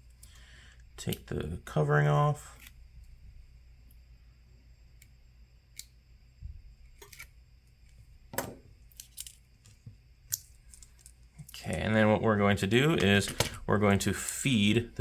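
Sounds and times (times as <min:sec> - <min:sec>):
low steady hum: 0:00.0 - 0:15.0
small parts clicking and tapping: 0:08.9 - 0:11.8.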